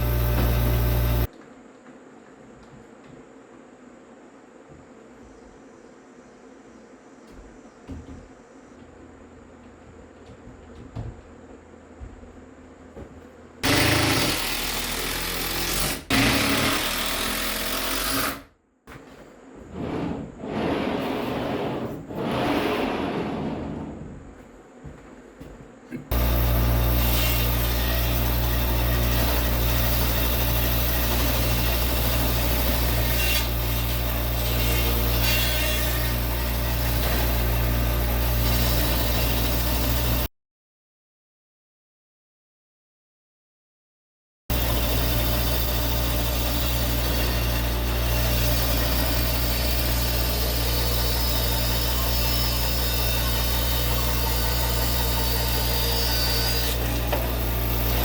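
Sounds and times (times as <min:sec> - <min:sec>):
bandsaw cutting through log: 0:00.0 - 0:01.3, 0:13.6 - 0:18.5, 0:26.1 - 0:40.3, 0:44.5 - 0:58.0.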